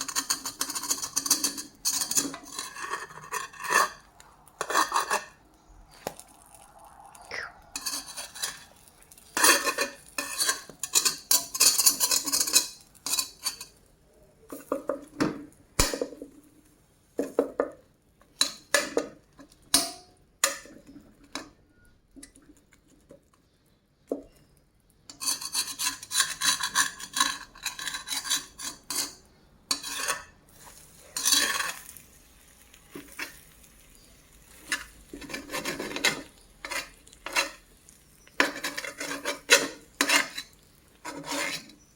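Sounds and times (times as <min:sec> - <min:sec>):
metal utensils scraping dishes: 0:00.0 - 0:05.4, 0:07.8 - 0:13.8, 0:25.1 - 0:32.1, 0:32.9 - 0:41.9.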